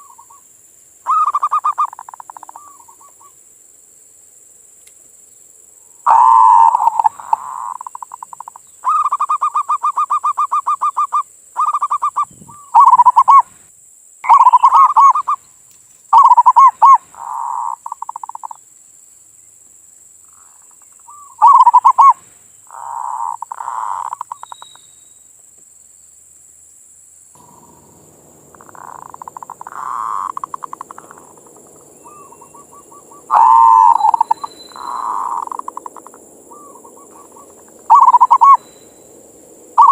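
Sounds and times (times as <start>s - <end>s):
doves cooing: 1.1s - 3.3s, 6.0s - 13.4s, 14.2s - 15.4s, 16.1s - 18.6s, 20.4s - 24.6s, 27.4s - 39.9s.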